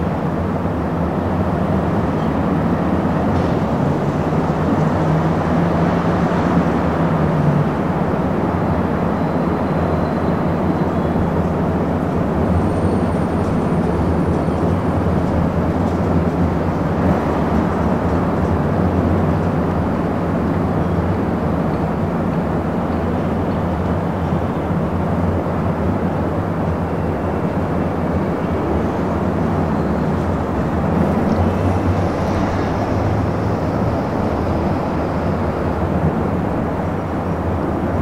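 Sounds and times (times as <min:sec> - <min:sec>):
distant traffic rumble: 0:00.0 - 0:38.0
faint brake squeals: 0:09.0 - 0:11.4, 0:12.4 - 0:15.1, 0:29.6 - 0:30.5.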